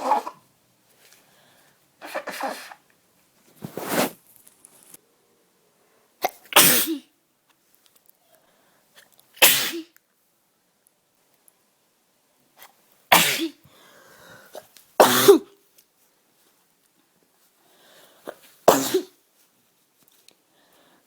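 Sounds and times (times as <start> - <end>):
person sneezing: 2.0 - 2.8, 6.2 - 7.1, 9.4 - 10.0, 13.1 - 13.6, 14.5 - 15.6, 18.3 - 19.2
voiced breath: 13.7 - 14.6.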